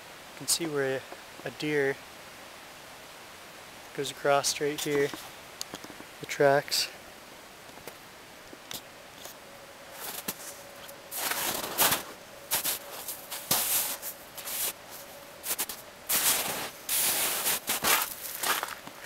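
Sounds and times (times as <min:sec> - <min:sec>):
footsteps crunching in snow: 0:09.2 - 0:19.0.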